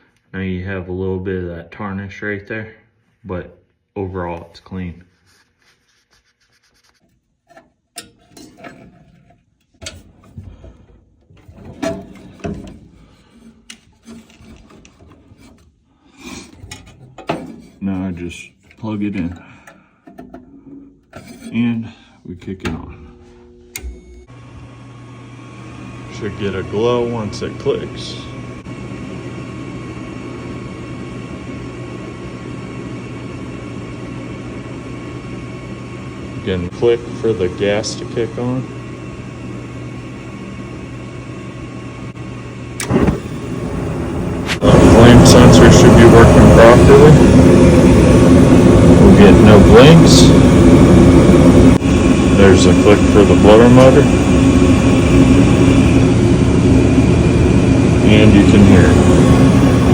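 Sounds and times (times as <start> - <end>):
rubbing and scraping: 5.0 - 10.5, 11.4 - 19.0, 20.1 - 21.8
furnace motor hum: 7.4 - 59.9
furnace sharp click: 23.7 - 24.2.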